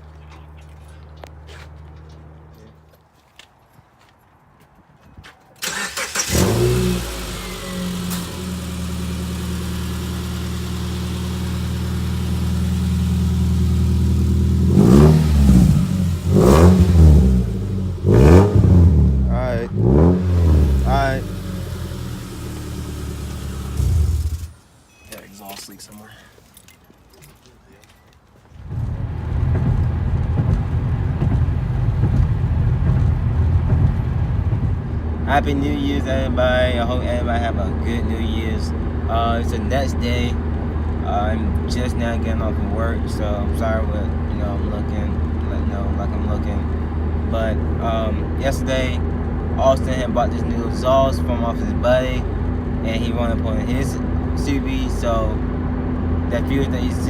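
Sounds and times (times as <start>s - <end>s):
engine revving: 5.6s - 24.6s
car engine cranking and idling: 5.6s - 26.9s, 28.6s - 57.0s
loud deep exhaust rumble: 6.3s - 24.6s, 28.6s - 57.0s.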